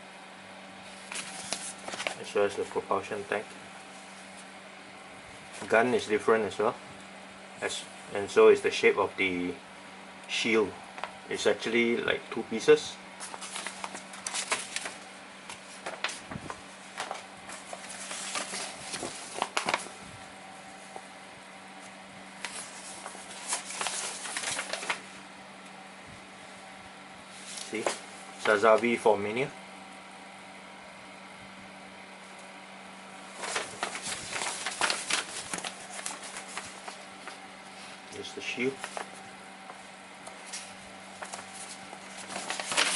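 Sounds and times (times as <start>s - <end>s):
faint steady hum: 0.0s - 42.9s
plastic packaging crinkling: 13.2s - 20.0s, 22.4s - 25.1s, 33.3s - 37.4s, 40.3s - 42.9s.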